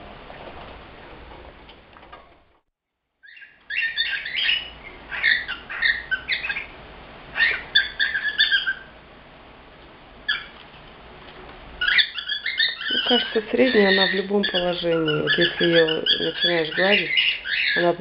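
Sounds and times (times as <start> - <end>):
cockatiel chirping calls: 3.2 - 6.7, 7.3 - 8.9, 10.3 - 10.6, 11.8 - 18.0.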